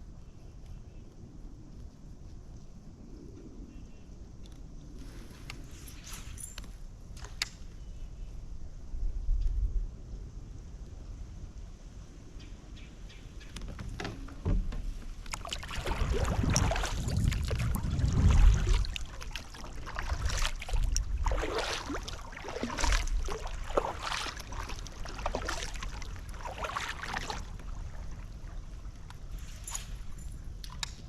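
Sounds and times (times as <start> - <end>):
low rumbling bumps: 13.5 - 29.4
paddle splashing in water: 13.6 - 30.2.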